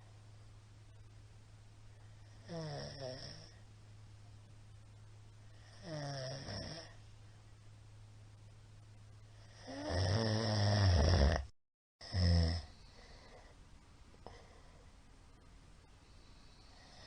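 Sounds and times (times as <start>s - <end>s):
faint low hum: 0.0s - 11.1s, 12.0s - 17.0s
man snoring loudly: 2.4s - 3.6s, 5.7s - 7.0s, 9.5s - 12.8s.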